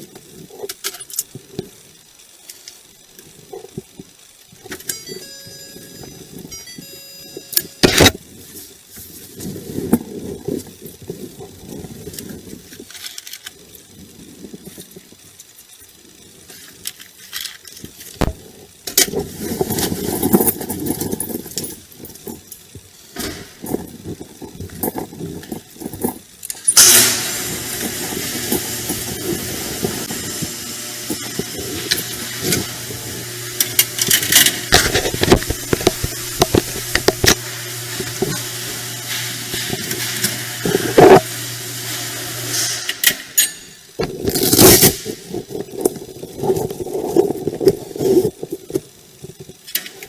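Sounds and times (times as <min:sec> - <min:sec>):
car engine running: 0:26.8 - 0:41.8.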